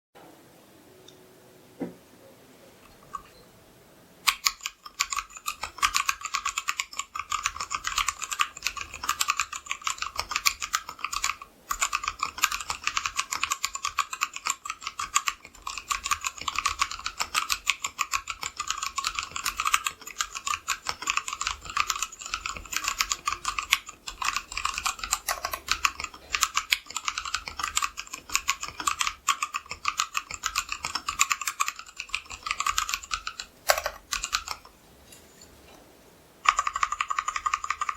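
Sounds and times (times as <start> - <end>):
fast mechanical keyboard typing: 4.2 - 34.7, 36.4 - 37.9.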